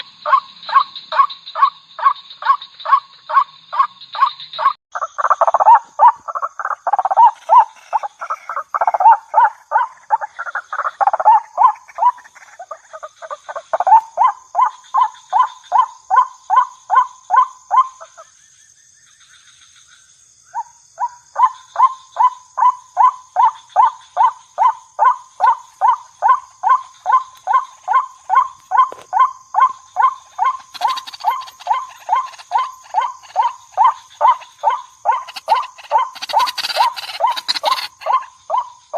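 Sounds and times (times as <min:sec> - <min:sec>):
waterhen calling: 0:05.0 - 0:14.0, 0:30.0 - 0:38.3.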